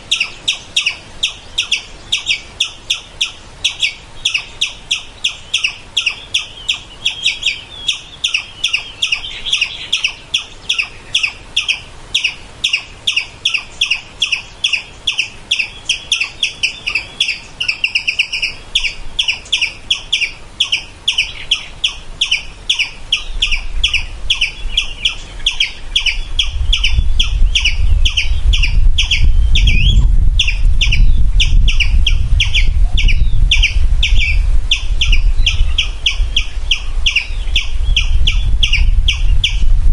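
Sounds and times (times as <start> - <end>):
squirrel alarm calls: 0.0 - 39.7
low rumble: 23.7 - 39.9.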